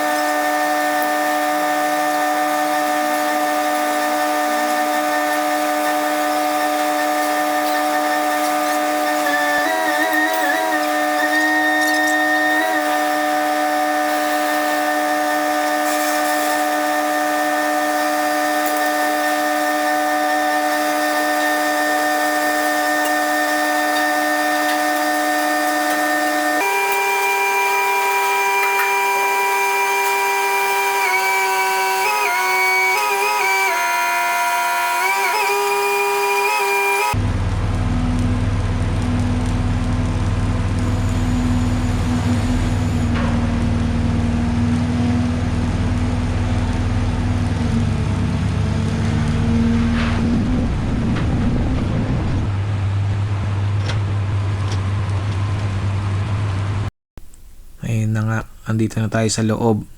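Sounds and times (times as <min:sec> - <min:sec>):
power tool motor whining: 0:00.0 - 0:37.2
low rumble: 0:49.8 - 0:56.9.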